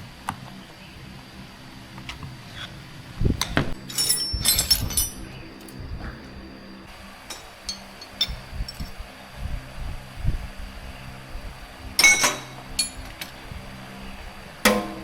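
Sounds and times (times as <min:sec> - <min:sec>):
hard objects clinking together: 0:03.4 - 0:05.8, 0:07.3 - 0:09.0, 0:12.0 - 0:13.4.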